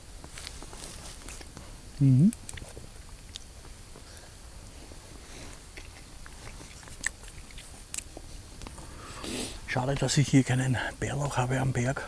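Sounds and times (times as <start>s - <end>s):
person chewing food: 5.5s - 8.9s.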